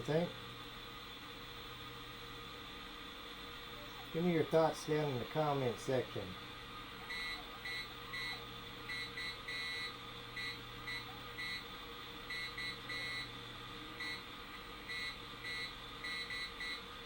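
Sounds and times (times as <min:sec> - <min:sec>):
morse code beeps: 0:07.1 - 0:11.6, 0:14.9 - 0:16.8.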